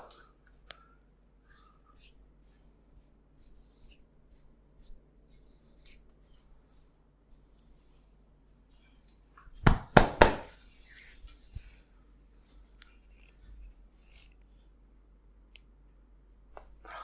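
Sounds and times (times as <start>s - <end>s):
hands rubbing on skin: 1.4s - 9.2s, 10.3s - 14.6s.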